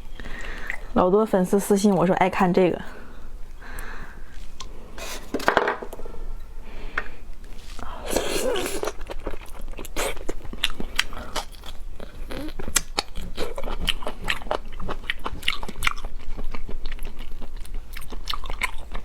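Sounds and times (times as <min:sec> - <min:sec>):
chewing and biting crunchy meat: 0:08.2 - 0:19.0.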